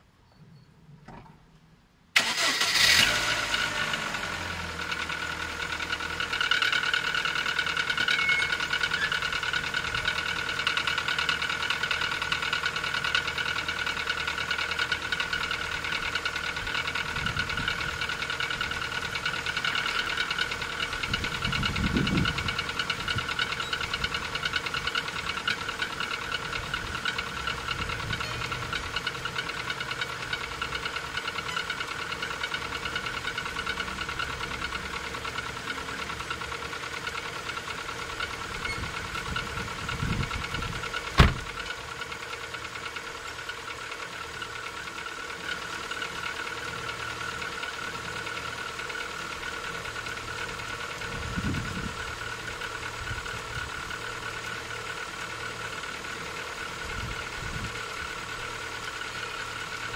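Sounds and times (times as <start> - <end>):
car engine starting: 1.0 - 59.9
engine idling with rapid knocking: 2.2 - 59.9.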